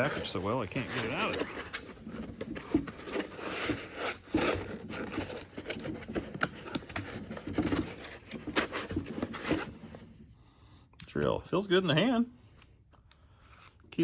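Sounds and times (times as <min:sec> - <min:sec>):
drill scraping against packaging: 0:00.0 - 0:09.8.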